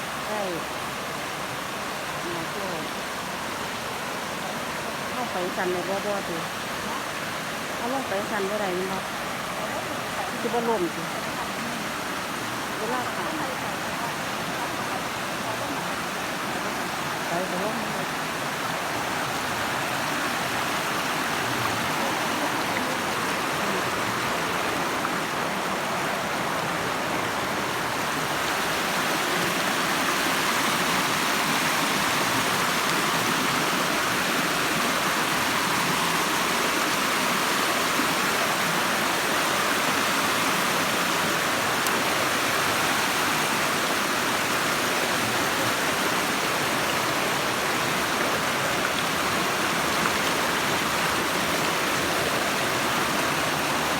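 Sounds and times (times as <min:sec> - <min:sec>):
waterfall rushing: 0:00.0 - 0:53.9.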